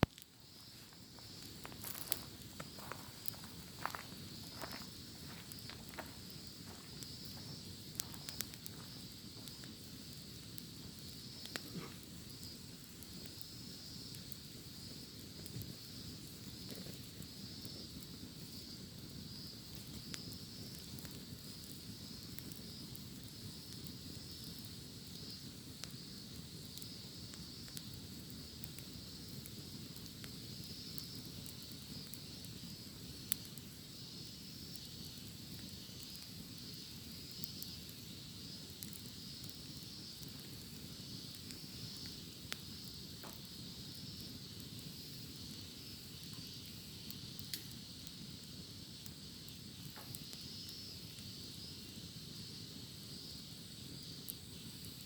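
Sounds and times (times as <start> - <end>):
cicadas buzzing: 0.0 - 11.6
wood fire crackling and popping: 0.0 - 55.0.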